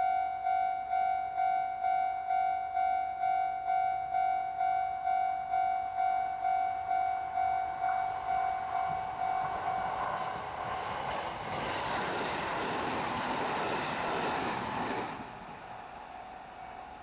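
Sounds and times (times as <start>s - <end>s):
level-crossing warning bell: 0.0s - 10.3s
train rushing over rails: 6.8s - 17.0s.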